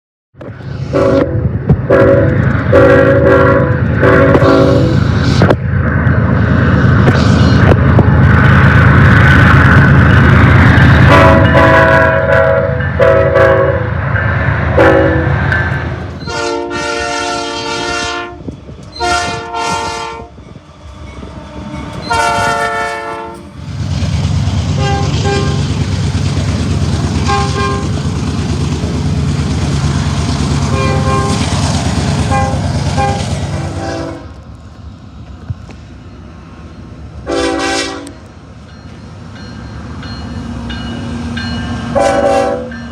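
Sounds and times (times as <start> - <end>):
passing train rumble: 0.4 - 42.9
locomotive air horn chord: 0.9 - 5.0, 11.1 - 13.9, 14.8 - 15.5, 16.2 - 20.4, 22.0 - 23.5, 24.8 - 25.7, 27.2 - 28.0, 30.7 - 31.5, 32.3 - 34.3, 37.2 - 38.2, 41.9 - 42.7.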